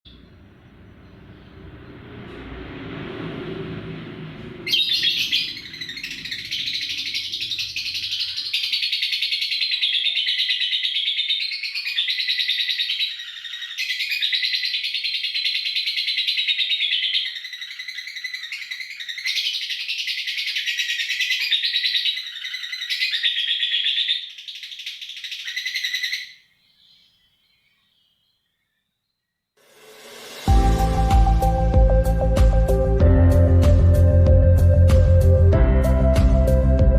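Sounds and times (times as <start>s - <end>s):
low rumbling noise: 0.1s - 7.8s, 29.9s - 36.9s
bird chattering trill: 4.7s - 26.4s.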